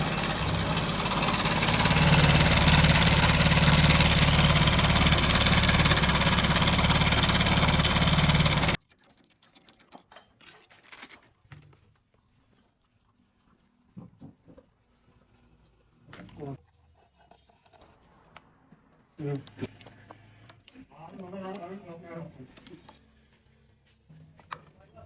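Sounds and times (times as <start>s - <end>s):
motorcycle engine running: 0.0s - 8.8s
timing chain clatter: 0.0s - 10.9s.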